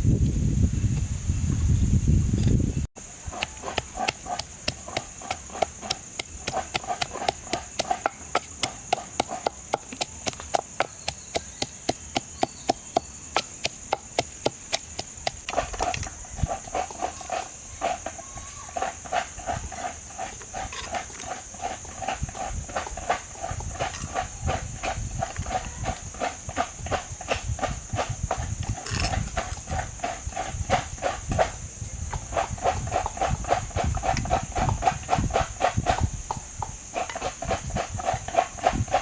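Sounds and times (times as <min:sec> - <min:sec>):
high insect drone: 0:00.0 - 0:39.0
knife chopping on cutting board: 0:03.4 - 0:15.6.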